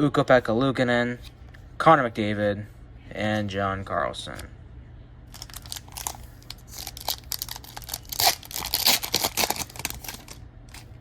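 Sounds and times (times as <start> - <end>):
foil wrapper tearing and crinkling: 5.3 - 10.9.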